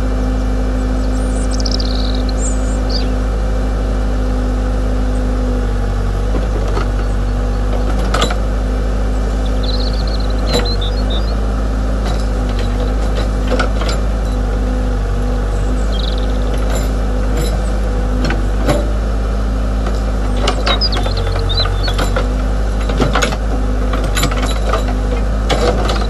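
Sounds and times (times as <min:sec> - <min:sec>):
electric motor hum: 0:00.0 - 0:26.0
sharp clicks and knocks: 0:19.8 - 0:26.0.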